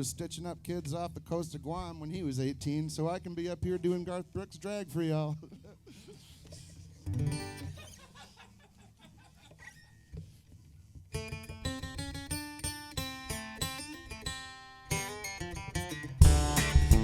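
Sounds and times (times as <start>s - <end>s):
guitar picking single notes: 7.1s - 7.7s, 11.2s - 17.0s.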